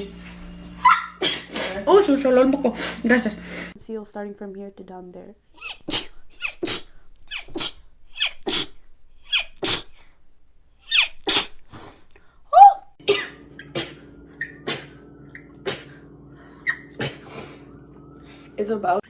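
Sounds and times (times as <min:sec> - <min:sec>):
steady low hum: 0:00.0 - 0:19.0
woman sneezing: 0:01.2 - 0:01.8, 0:05.7 - 0:09.9
loud voiced cry: 0:12.6 - 0:12.9.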